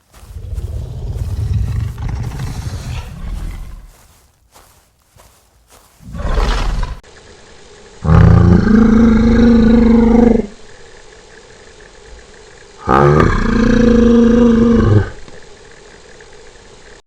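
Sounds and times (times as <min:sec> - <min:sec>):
dinosaur roar: 0:00.0 - 0:04.2, 0:06.0 - 0:07.0, 0:08.0 - 0:10.6, 0:12.8 - 0:15.3.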